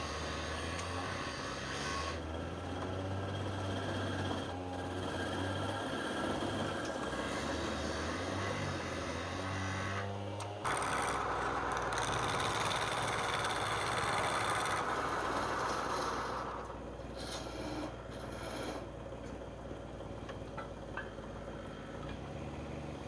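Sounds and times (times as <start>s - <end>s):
turning tool cutting wood: 0.0s - 19.0s
wood lathe motor hum: 0.0s - 22.9s.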